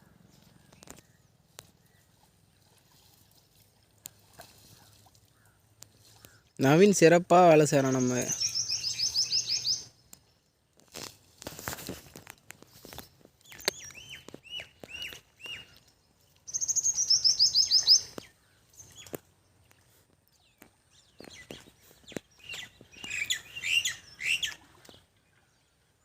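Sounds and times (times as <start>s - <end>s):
birds whistling and chirping: 7.8s - 10.0s, 13.4s - 15.8s, 16.5s - 19.2s, 20.4s - 25.0s.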